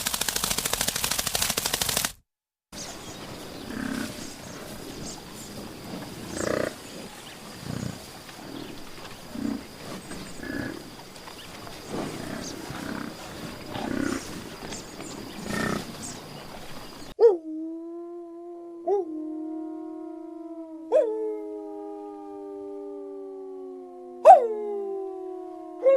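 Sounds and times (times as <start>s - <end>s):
big cat grunting roars: 3.6s - 10.9s, 11.8s - 16.2s
drawn-out howl: 17.8s - 25.9s.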